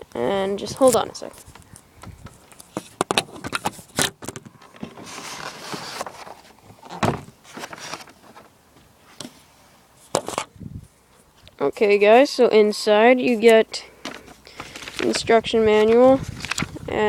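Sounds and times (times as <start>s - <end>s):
packaging rustling: 3.6s - 8.4s.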